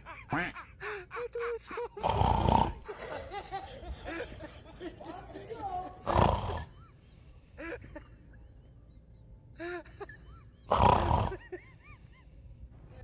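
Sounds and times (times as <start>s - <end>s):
man snoring loudly: 2.0s - 2.9s, 6.0s - 6.7s, 10.7s - 11.5s.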